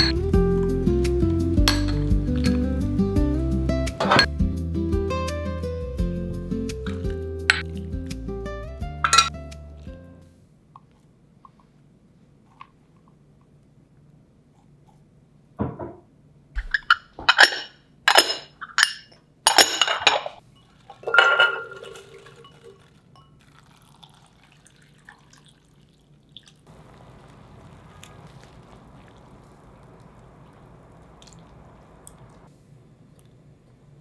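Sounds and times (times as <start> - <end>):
dishes and glassware clinking: 0.0 - 0.3, 1.6 - 2.9, 4.0 - 4.4, 6.9 - 7.8, 9.0 - 9.4, 16.6 - 23.4
faint steady hiss: 20.4 - 34.0.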